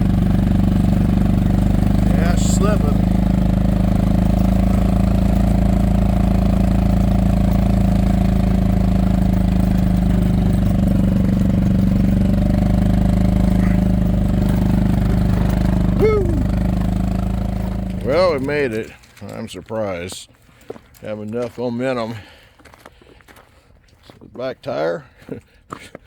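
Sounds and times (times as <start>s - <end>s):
tire spinning on snow: 0.0s - 18.8s
golf cart engine running: 0.0s - 18.9s.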